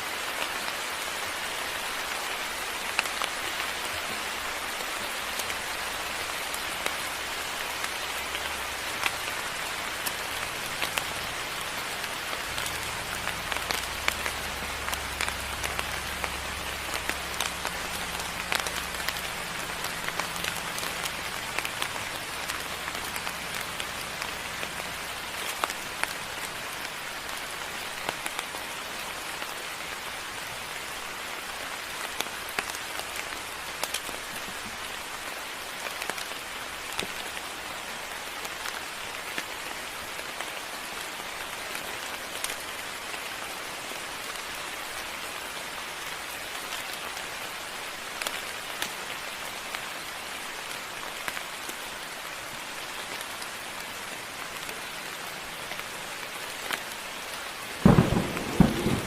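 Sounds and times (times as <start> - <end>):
steady rain falling: 0.0 - 59.0
loud thunder clap: 57.8 - 59.0.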